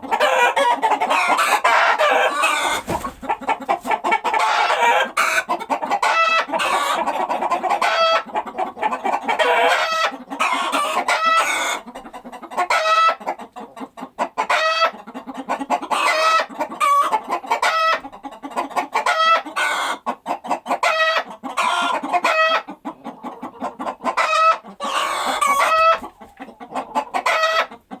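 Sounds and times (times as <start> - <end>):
chickens clucking: 0.0 - 28.0.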